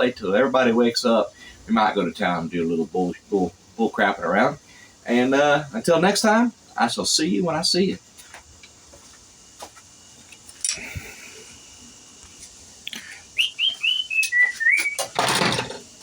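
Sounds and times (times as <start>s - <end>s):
high whistled notes: 13.4s - 15.0s.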